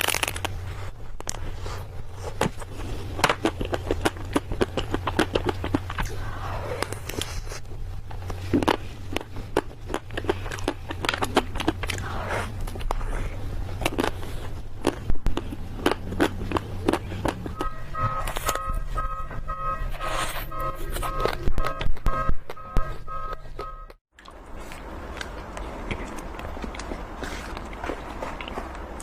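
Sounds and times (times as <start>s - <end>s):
crunching sweets: 0.0s - 29.0s
low hum: 0.0s - 29.0s
repeating high electronic tone: 17.6s - 24.0s.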